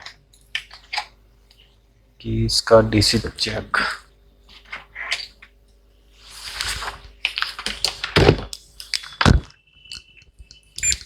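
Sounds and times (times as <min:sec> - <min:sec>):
clicks and knocks of parts: 0:00.0 - 0:01.2
parts rustling: 0:04.5 - 0:10.1.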